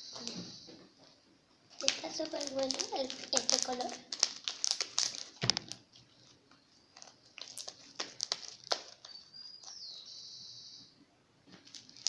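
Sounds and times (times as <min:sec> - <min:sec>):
high whistle and hiss: 0:00.0 - 0:00.8, 0:10.1 - 0:10.9
slime clicking and crackling: 0:01.7 - 0:09.9, 0:11.5 - 0:12.0.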